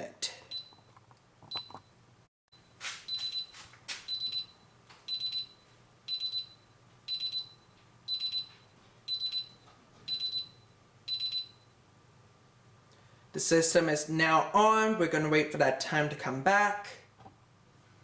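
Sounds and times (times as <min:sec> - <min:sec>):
alarm keypad triple beeps: 0:04.1 - 0:08.5, 0:09.1 - 0:11.6.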